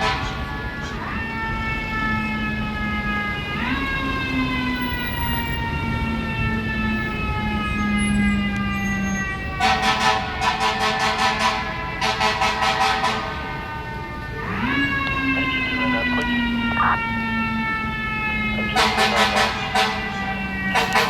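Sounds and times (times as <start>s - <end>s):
fire engine siren winding: 3.6s - 10.0s, 12.4s - 21.0s
air horns blasting: 9.6s - 13.7s, 18.4s - 21.0s.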